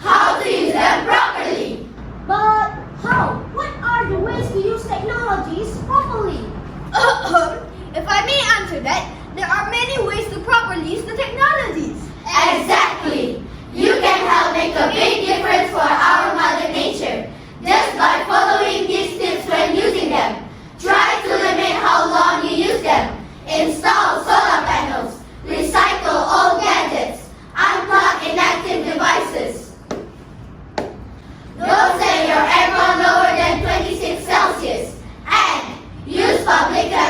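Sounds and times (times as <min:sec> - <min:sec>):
children singing in unison: 0:31.6 - 0:37.0.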